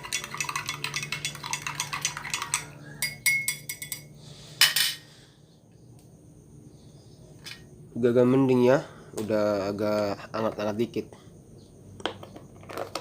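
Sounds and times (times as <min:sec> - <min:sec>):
spoon clinking in cup: 0:00.0 - 0:05.0.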